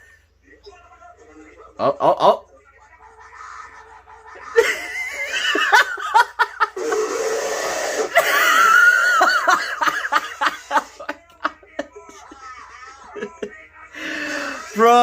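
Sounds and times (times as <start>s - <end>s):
laughter: 4.4s - 7.0s, 8.1s - 13.6s
hissing noise: 6.7s - 8.2s.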